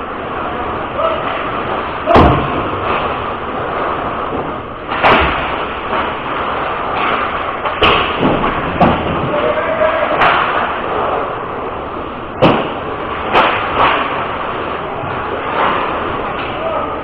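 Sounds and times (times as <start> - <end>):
puck and sticks banging boards: 0.3 - 11.3, 12.3 - 17.0.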